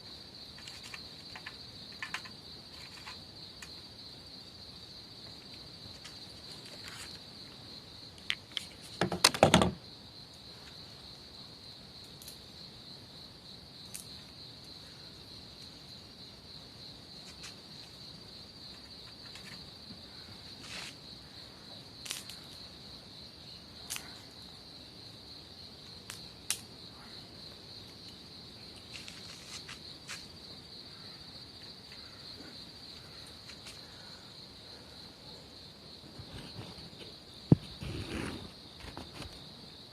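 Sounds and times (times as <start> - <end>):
insects chirring: 0.0 - 39.9
clatter of knocks: 9.0 - 9.8.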